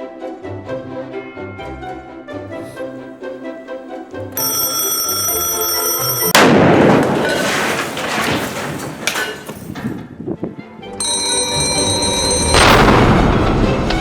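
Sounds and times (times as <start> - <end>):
background music: 0.0 - 6.4, 10.2 - 14.0
alarm clock electronic tone: 4.4 - 6.4, 11.0 - 12.8
loud explosion: 6.3 - 7.4, 12.5 - 14.0.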